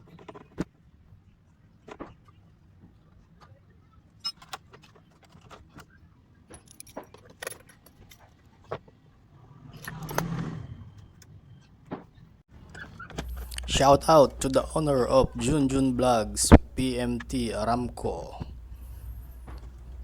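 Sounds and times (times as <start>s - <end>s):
metal parts clicking and clinking: 6.5s - 8.4s
low hum: 13.2s - 20.0s.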